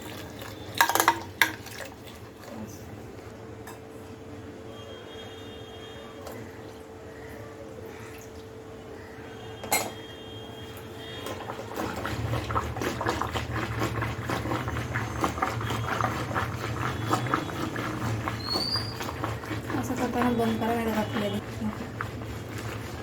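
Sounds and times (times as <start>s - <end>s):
food bubbling and crackling: 0.0s - 4.0s, 10.5s - 23.0s.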